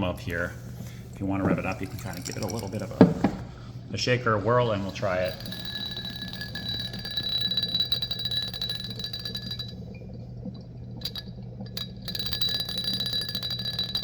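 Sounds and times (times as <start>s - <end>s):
coin chattering on bottle mouth: 4.8s - 9.8s.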